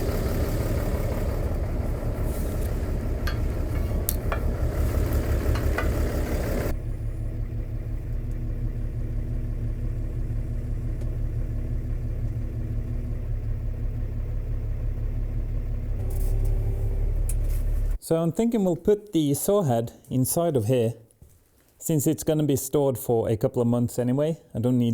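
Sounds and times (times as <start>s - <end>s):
bright noisy engine layer: 0.0s - 7.0s
tractor diesel engine rumbling: 0.0s - 18.0s.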